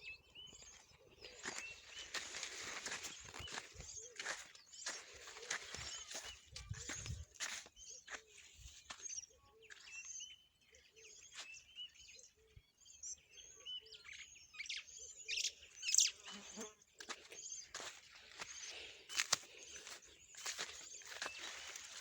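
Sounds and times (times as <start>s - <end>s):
birds chirping: 0.0s - 22.0s
crunching through dry vegetation: 0.3s - 10.3s, 16.2s - 22.0s.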